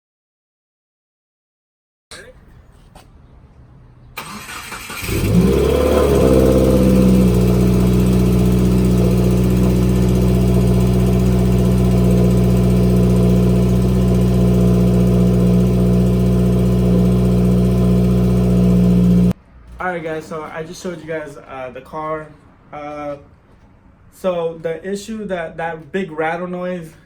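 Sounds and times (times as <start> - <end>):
car engine starting and idling: 4.2 - 19.9.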